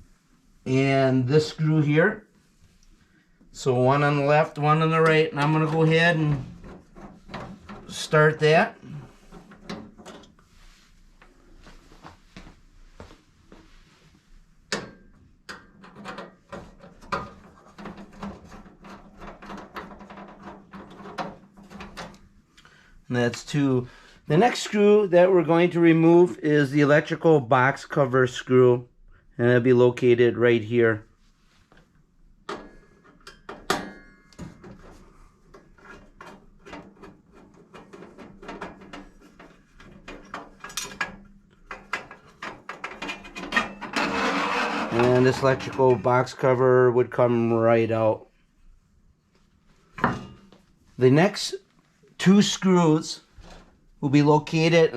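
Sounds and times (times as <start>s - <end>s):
screw clicks and scrapes: 41.7s - 45.4s.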